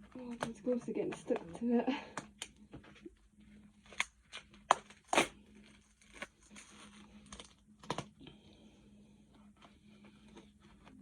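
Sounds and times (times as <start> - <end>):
packaging clicks and snaps: 3.9 - 5.3.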